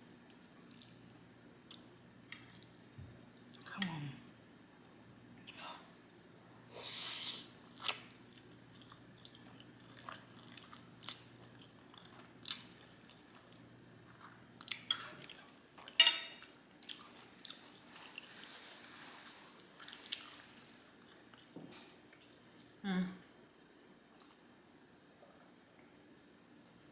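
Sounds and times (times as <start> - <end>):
chewing and wet mouth smacking: 0.4 - 1.0, 7.8 - 16.0, 16.8 - 18.3, 19.7 - 22.7.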